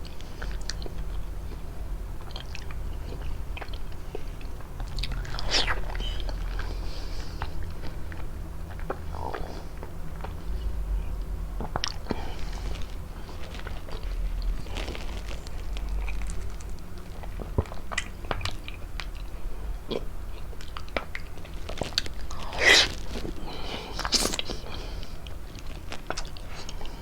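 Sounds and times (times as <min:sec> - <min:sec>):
biting and chewing fruit: 0:00.0 - 0:27.0
wet clicks and crunches: 0:11.6 - 0:19.2.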